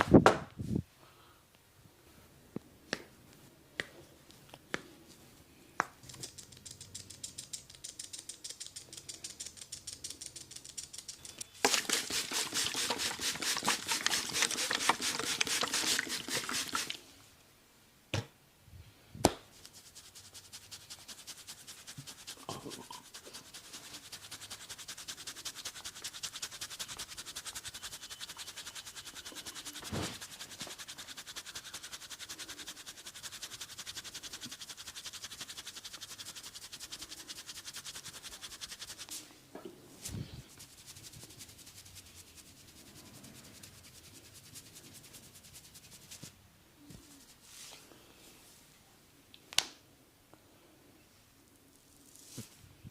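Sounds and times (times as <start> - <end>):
hands rubbing hair and skin: 2.9 - 17.0, 19.5 - 39.3, 39.9 - 47.9.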